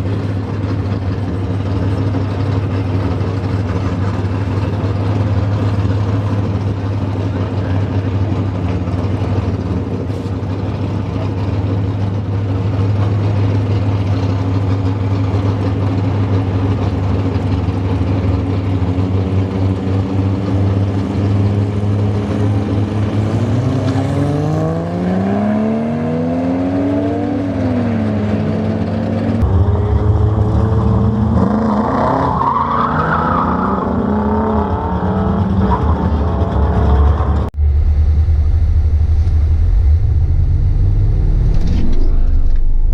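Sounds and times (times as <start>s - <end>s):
car engine revving: 0.0s - 42.9s.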